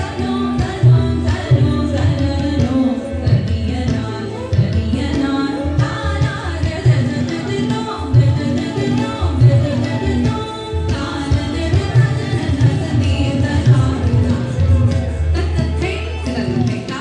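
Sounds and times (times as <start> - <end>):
hand drums: 0.0 - 17.0.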